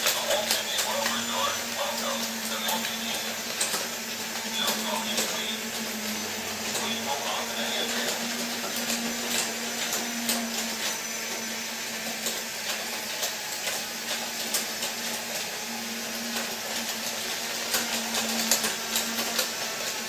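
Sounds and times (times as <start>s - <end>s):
clicks and rattles on plastic track: 0.0s - 11.0s, 16.1s - 20.0s
toy train motors whirring: 0.0s - 20.0s.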